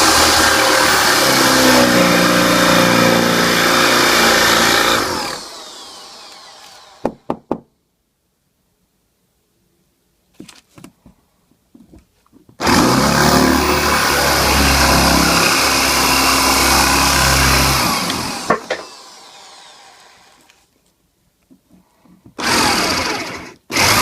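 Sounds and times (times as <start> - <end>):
electric drill running: 0.0 - 7.3, 12.6 - 20.6, 22.4 - 24.0.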